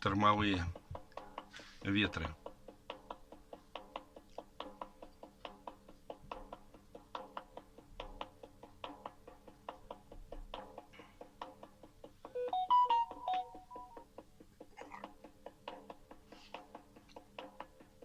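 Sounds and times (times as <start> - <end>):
short electronic melody: 12.4 - 14.0.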